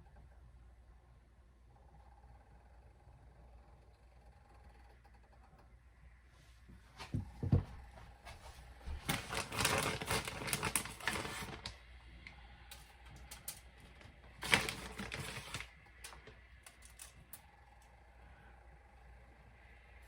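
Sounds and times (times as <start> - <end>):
rapid clicking and rattling: 9.1 - 11.8, 12.7 - 17.8.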